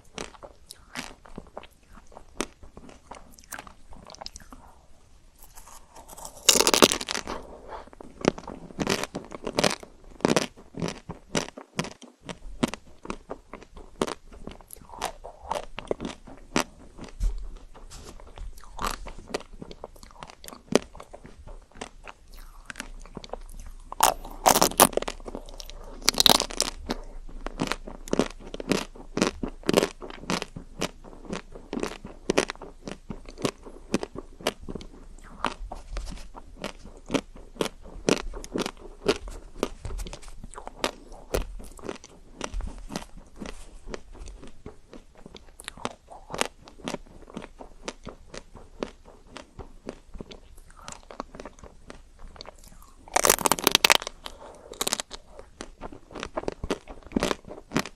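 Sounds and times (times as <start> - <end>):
chewing with small crackles: 0.0 - 57.9
crunching bites of chocolate shell: 5.4 - 7.5, 21.8 - 35.6, 52.4 - 57.9.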